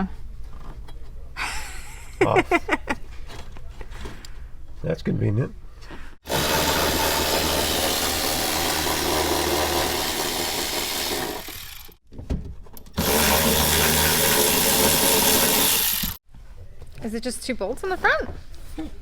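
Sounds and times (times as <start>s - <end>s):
power tool motor running: 6.2s - 12.0s, 13.0s - 16.2s.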